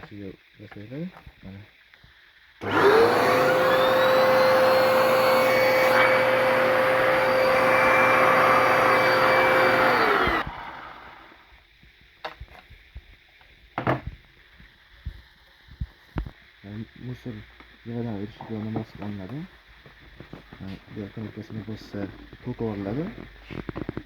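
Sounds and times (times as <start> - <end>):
vacuum cleaner motor whine: 2.6 - 11.4.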